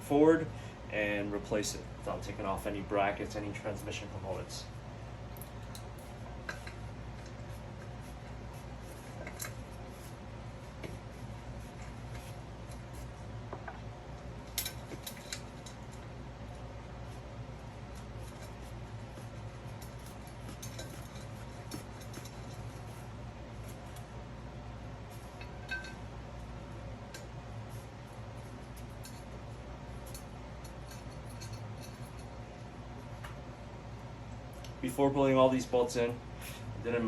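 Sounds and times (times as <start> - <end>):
low background hum: 0.0 - 37.0
metallic clinks of bolts and tools: 30.0 - 32.3.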